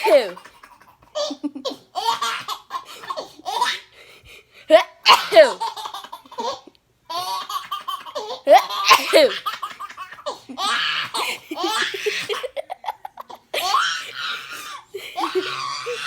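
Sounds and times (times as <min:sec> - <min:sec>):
baby laughing: 0:00.0 - 0:03.9, 0:05.1 - 0:16.0
adult fake sneezing: 0:04.7 - 0:05.6, 0:08.2 - 0:11.4.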